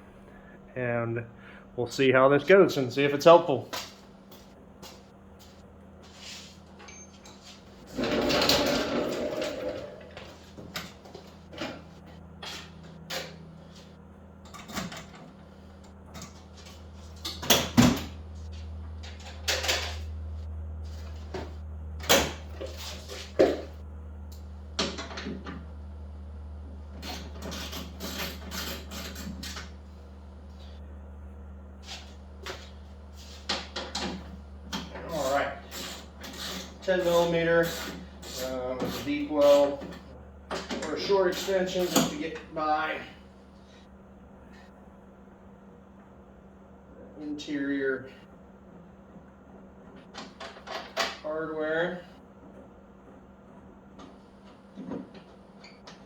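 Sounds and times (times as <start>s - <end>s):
steady low hum: 0.0s - 56.0s
hand tools and metal parts clattering: 3.7s - 15.4s, 16.1s - 20.1s, 20.9s - 25.6s, 27.0s - 29.9s, 31.8s - 42.5s.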